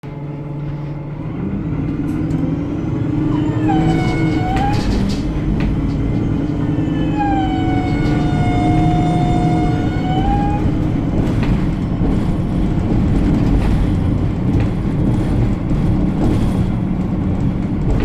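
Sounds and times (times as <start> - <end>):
bus engine and road rumble: 0.0 - 18.0
high-pitched squeal: 2.5 - 11.2.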